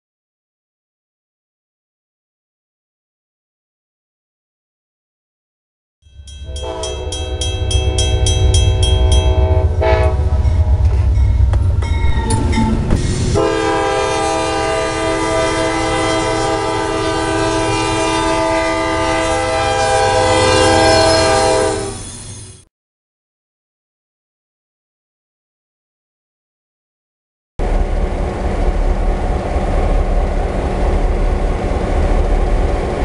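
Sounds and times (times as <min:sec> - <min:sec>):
low train rumble: 0:06.1 - 0:22.7, 0:27.6 - 0:33.0
train air horn blasts: 0:06.4 - 0:11.2, 0:12.3 - 0:22.1.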